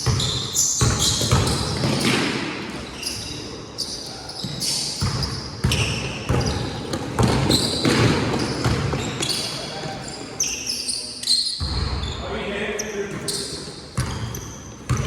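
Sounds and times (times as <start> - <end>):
basketball bouncing on court: 0.0 - 2.3, 4.4 - 9.2, 14.0 - 15.0.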